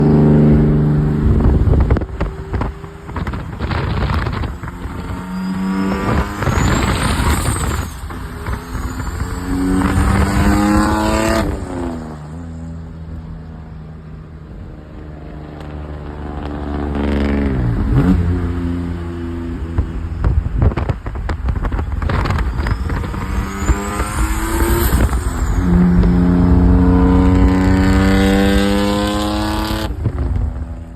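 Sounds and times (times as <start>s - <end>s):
car engine revving: 0.0s - 13.4s, 15.3s - 30.9s
turbo whistle: 4.8s - 10.8s, 22.2s - 27.2s.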